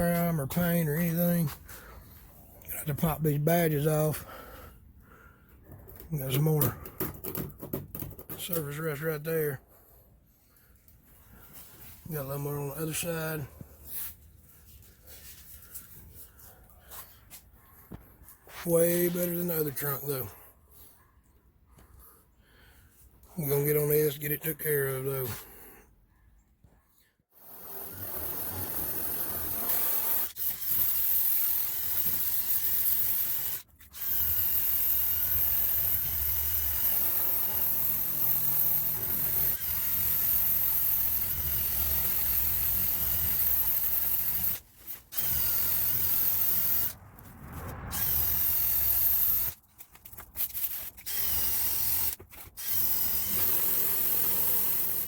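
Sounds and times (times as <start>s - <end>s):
drill wire brush scrubbing steel: 27.4s - 47.0s, 48.0s - 55.0s.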